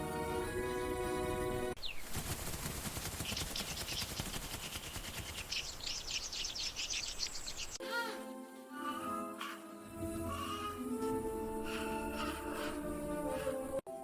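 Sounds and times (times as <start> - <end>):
birds chirping and calling: 0.6 - 7.8, 10.2 - 13.8.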